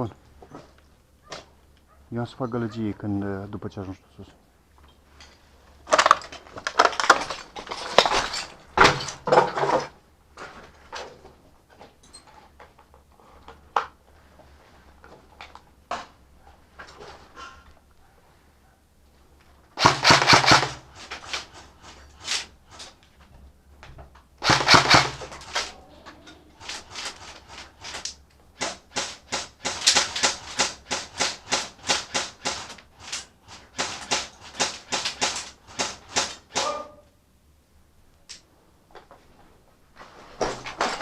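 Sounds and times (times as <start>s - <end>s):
airsoft gun rapid fire: 19.8s - 20.9s, 24.4s - 25.6s, 28.6s - 36.7s.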